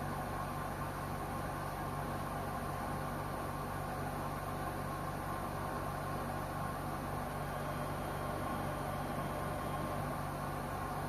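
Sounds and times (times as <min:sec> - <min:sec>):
washing machine humming: 0:00.0 - 0:11.0.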